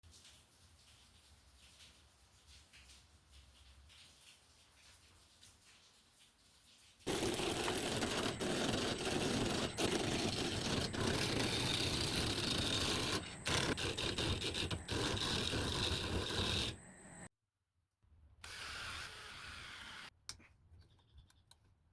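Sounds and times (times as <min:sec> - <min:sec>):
lathe tool scraping wood: 0:07.1 - 0:17.3.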